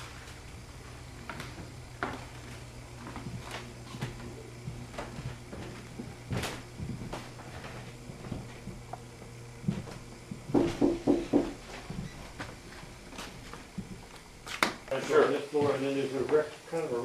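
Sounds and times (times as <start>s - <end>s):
heavy thumps: 5.3s - 12.6s.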